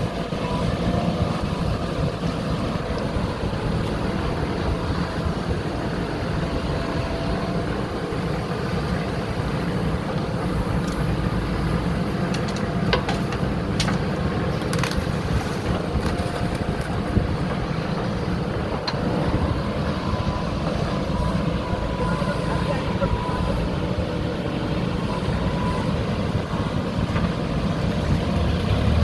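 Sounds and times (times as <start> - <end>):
diesel engine running: 0.0 - 29.0
sharp clicks and knocks: 12.3 - 17.0.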